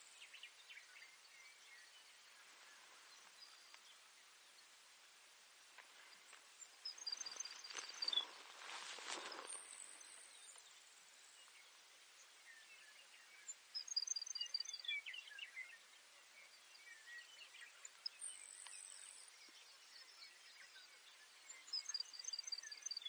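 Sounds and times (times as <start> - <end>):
faint bird chirps: 0.0 - 23.0
sparrow singing: 6.0 - 23.0.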